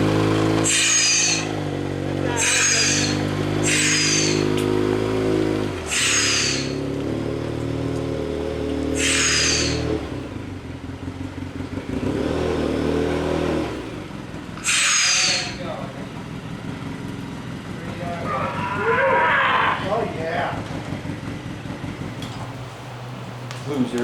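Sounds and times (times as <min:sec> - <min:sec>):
utility vehicle engine running: 0:00.0 - 0:24.0
high hissing squeals: 0:00.6 - 0:01.7, 0:02.3 - 0:04.6, 0:05.9 - 0:06.9, 0:08.9 - 0:10.0, 0:14.6 - 0:15.8.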